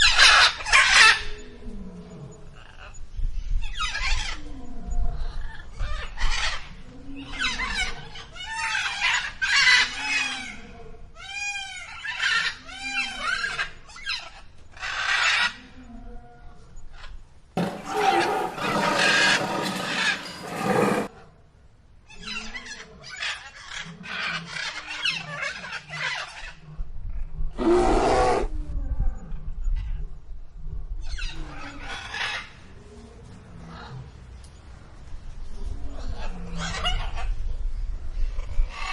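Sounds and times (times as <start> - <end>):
harsh rasping call: 17.6 - 21.1.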